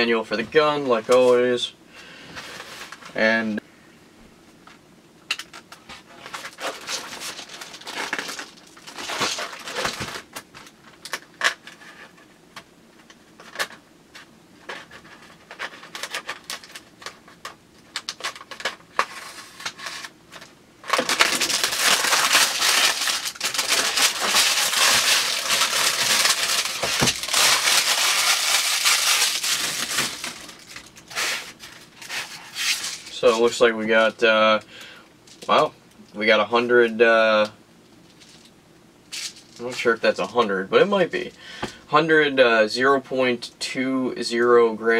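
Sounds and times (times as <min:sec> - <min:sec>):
plastic packaging crinkling: 0:06.1 - 0:12.1, 0:14.6 - 0:33.6.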